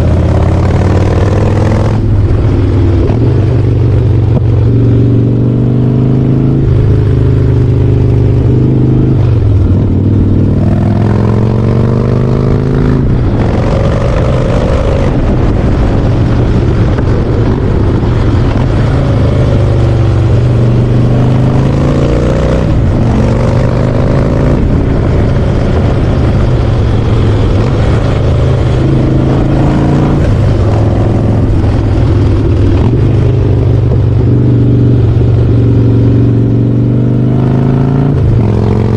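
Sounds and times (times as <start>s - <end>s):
motorcycle engine accelerating: 0.0s - 38.9s.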